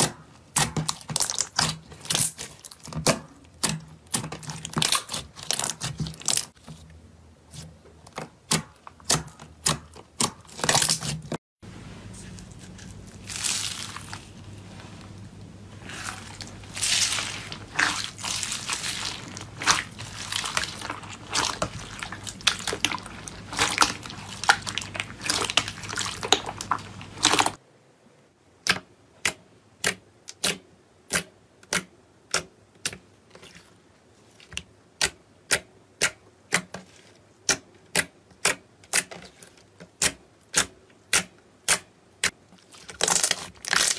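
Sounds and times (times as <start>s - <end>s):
slime squished by hand: 0.0s - 6.7s, 15.8s - 27.6s, 37.4s - 43.9s.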